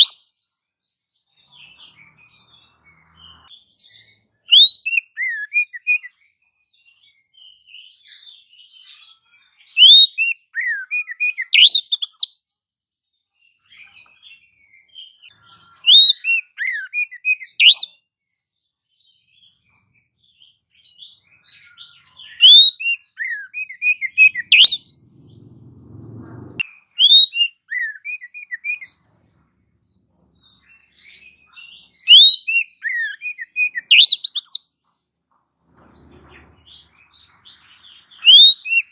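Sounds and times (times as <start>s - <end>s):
bird chirps and whistles: 0.0s - 0.2s, 4.5s - 6.2s, 9.6s - 12.4s, 15.1s - 18.0s, 21.0s - 25.5s, 26.1s - 29.0s, 30.2s - 34.7s, 37.4s - 38.9s
brief low rumble: 24.2s - 26.6s.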